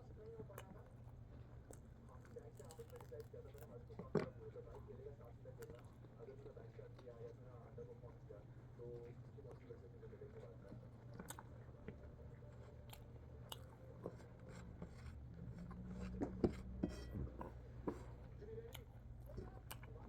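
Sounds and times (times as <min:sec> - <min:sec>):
steady low hum: 0:00.0 - 0:20.0
person chewing: 0:01.6 - 0:03.7, 0:11.0 - 0:20.0.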